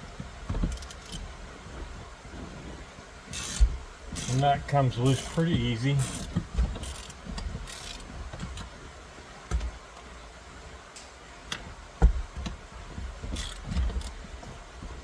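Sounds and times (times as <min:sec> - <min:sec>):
hand tools clicking on a nut: 0:13.3 - 0:14.2.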